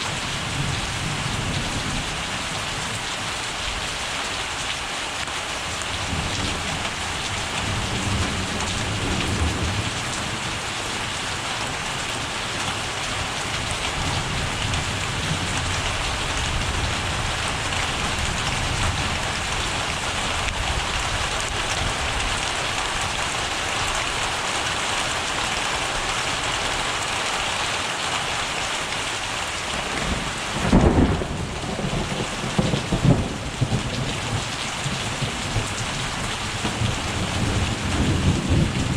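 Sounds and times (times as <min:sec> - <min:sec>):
heavy rain falling: 0:00.0 - 0:38.9
thunder rumbling: 0:06.0 - 0:10.7, 0:29.8 - 0:38.9.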